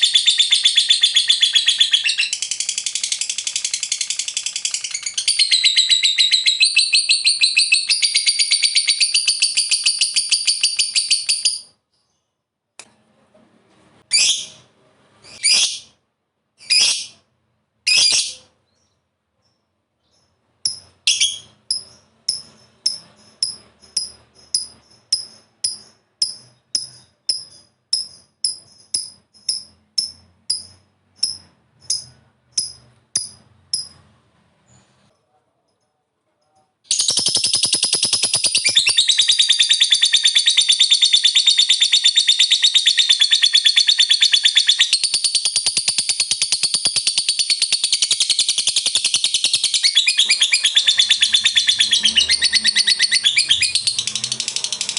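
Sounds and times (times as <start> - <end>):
bird chattering trill: 0.0 - 11.7, 20.7 - 34.0, 36.9 - 54.9
high bird calls: 0.0 - 12.2, 20.1 - 34.0, 36.9 - 54.9.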